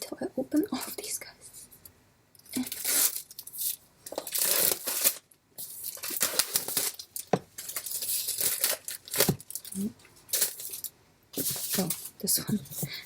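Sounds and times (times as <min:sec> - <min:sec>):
packaging being torn and crinkled: 0:02.6 - 0:12.2.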